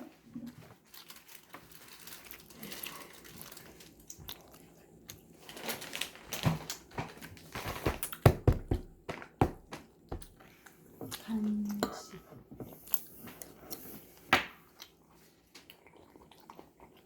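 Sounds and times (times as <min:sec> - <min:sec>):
chewing and mouth noises: 0:03.3 - 0:05.4, 0:14.7 - 0:17.0.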